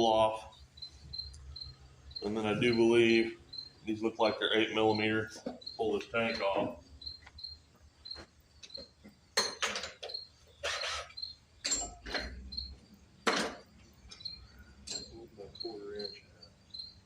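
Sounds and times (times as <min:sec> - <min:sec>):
cricket chirping: 0:00.0 - 0:17.0
hand tools clattering and scraping: 0:05.2 - 0:06.8, 0:08.1 - 0:12.5, 0:13.3 - 0:15.3.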